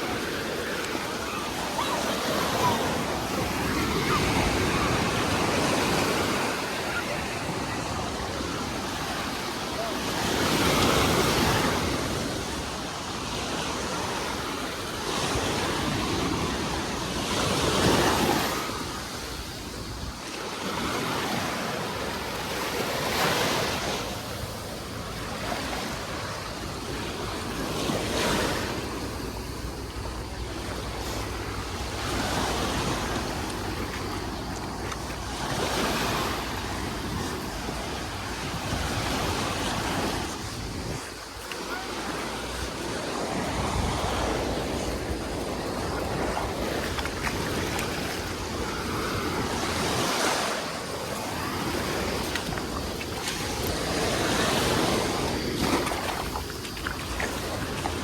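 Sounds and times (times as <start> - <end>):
sea waves breaking on shore: 0.0 - 58.0
wind rumbling on microphone: 23.8 - 58.0.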